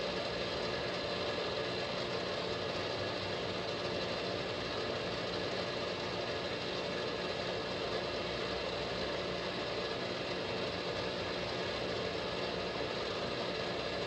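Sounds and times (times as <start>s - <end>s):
lathe humming: 0.0s - 14.0s.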